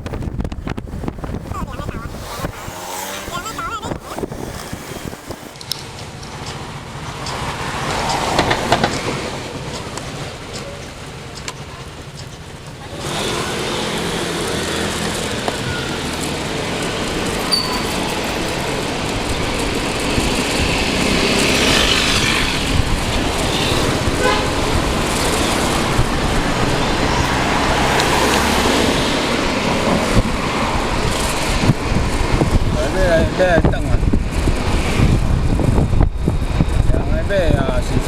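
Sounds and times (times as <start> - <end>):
wind on microphone: 0.0 - 5.6, 18.2 - 38.0
road traffic: 0.0 - 38.0.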